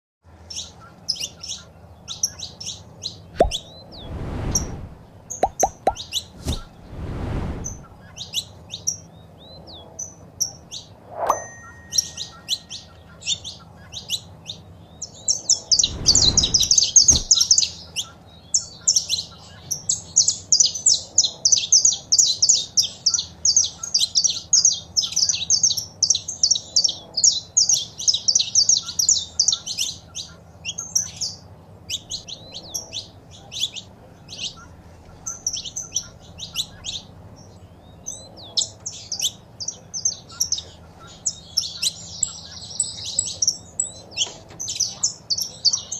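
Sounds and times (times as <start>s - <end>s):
low rumble: 3.4s - 8.0s, 15.7s - 17.4s.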